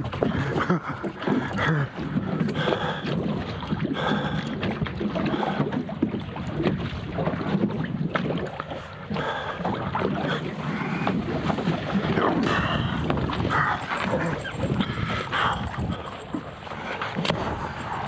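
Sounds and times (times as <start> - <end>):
water washing against boat: 0.0 - 18.0
wind on microphone: 0.0 - 18.0.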